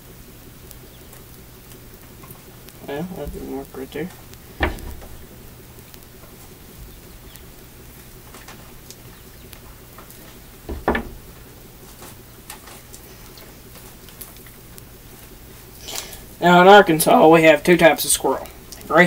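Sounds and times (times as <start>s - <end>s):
steady low hum: 0.0s - 19.0s
double knock: 4.6s - 5.4s, 10.7s - 11.3s.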